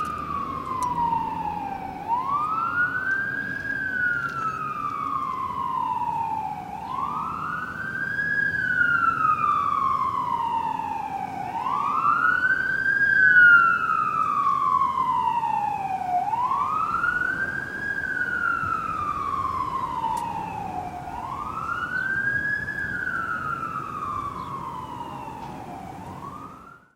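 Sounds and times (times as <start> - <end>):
emergency siren wailing: 0.0 - 26.9.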